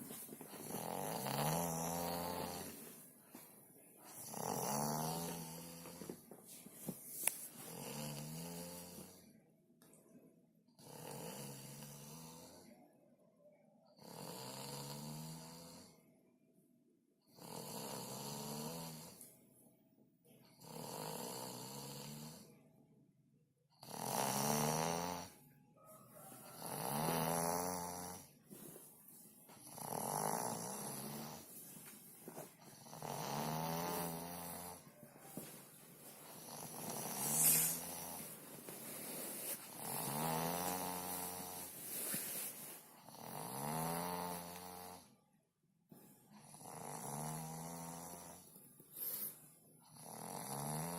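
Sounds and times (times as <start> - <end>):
person snoring: 0.6 - 2.8, 4.1 - 6.1, 7.7 - 9.2, 23.8 - 25.4, 26.5 - 28.3, 29.6 - 31.5, 32.6 - 34.8, 36.2 - 45.1, 46.4 - 50.9.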